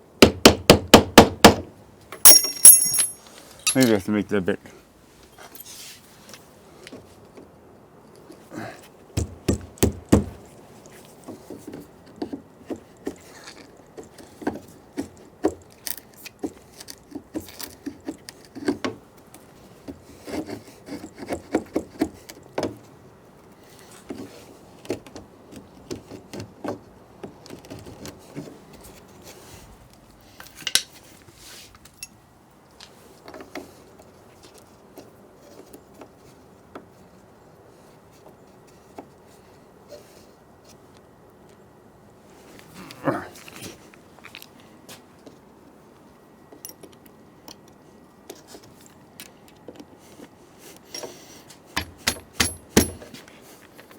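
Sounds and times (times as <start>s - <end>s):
tools tapping and scraping lock: 2.2s - 4.0s, 51.8s - 53.2s.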